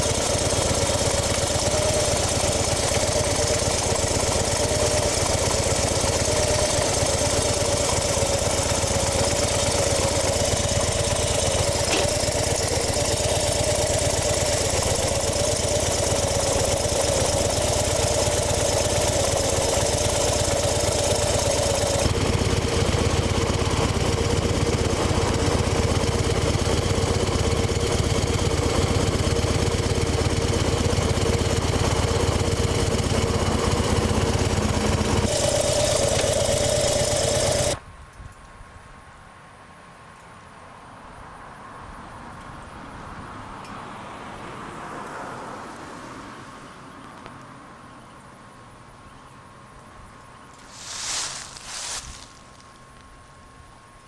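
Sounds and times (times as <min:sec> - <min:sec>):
motorcycle engine idling: 0:00.0 - 0:37.8.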